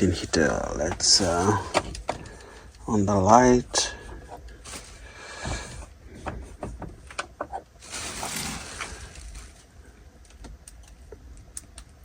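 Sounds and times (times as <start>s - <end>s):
low steady hum: 0.0s - 12.0s
light handling clicks and knocks: 0.8s - 2.8s.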